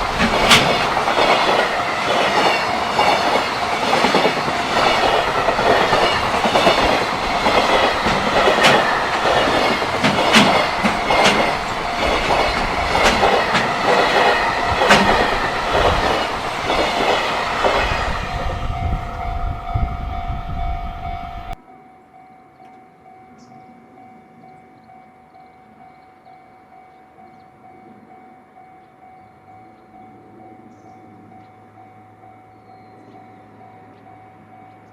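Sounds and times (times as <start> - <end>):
freight train wheels clattering: 0.0 - 21.6.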